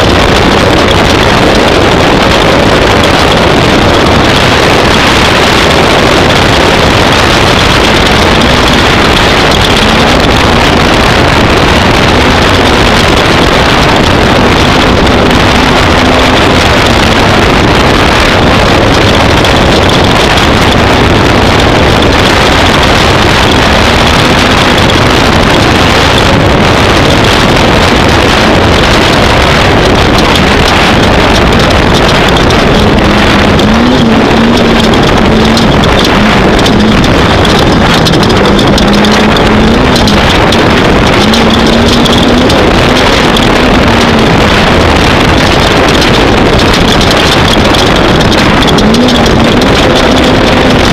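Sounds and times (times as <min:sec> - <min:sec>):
race vehicle engine running hard: 0:00.0 - 0:50.9
wind and terrain noise: 0:00.0 - 0:50.9.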